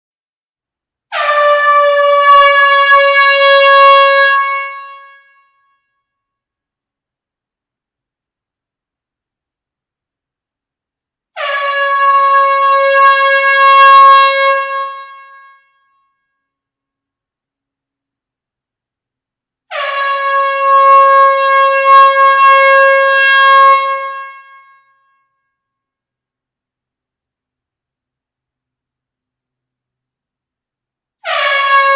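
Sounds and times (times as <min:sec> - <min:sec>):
air horn blast: 0:01.1 - 0:05.6, 0:11.4 - 0:15.8, 0:19.7 - 0:24.9, 0:31.2 - 0:31.9.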